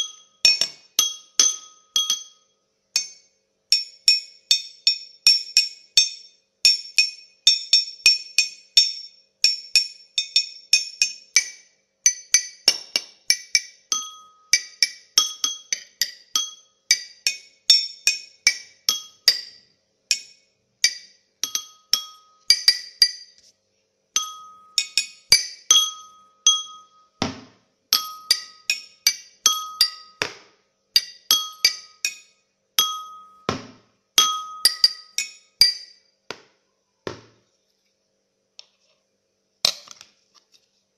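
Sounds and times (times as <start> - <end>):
glass clinking when struck: 0.0 - 7.9, 8.8 - 23.4, 24.2 - 30.4, 31.0 - 36.0
heavy knock: 33.5 - 33.9, 37.1 - 37.4.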